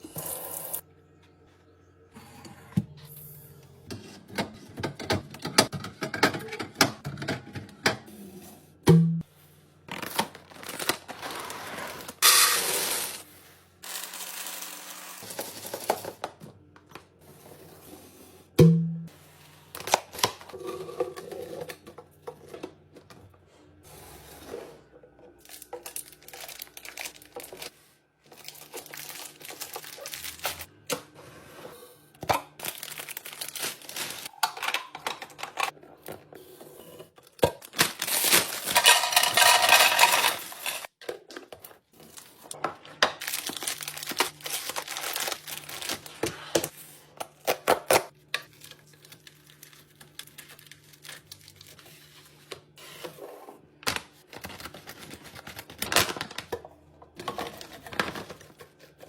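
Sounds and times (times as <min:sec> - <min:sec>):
plastic packaging crinkling and tearing: 0:09.9 - 0:13.2, 0:25.4 - 0:27.7, 0:28.3 - 0:30.7, 0:32.6 - 0:34.3, 0:37.6 - 0:40.9, 0:43.2 - 0:46.7, 0:47.4 - 0:51.9, 0:53.8 - 0:56.5, 0:57.2 - 0:59.0.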